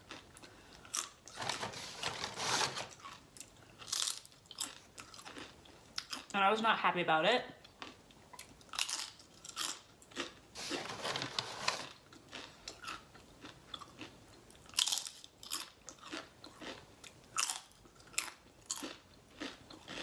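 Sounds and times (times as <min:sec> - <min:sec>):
person chewing food: 0:02.9 - 0:06.3, 0:11.8 - 0:20.0.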